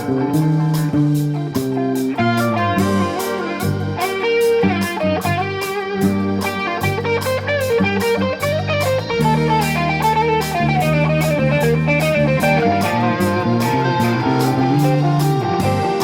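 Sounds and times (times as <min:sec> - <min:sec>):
bass guitar: 0:00.0 - 0:16.0
drums keeping a steady beat: 0:00.0 - 0:16.0
electric guitar: 0:00.0 - 0:16.0.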